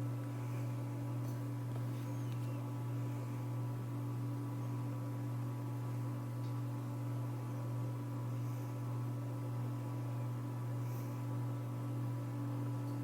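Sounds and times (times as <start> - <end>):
ceiling fan motor humming: 0.0 - 13.0.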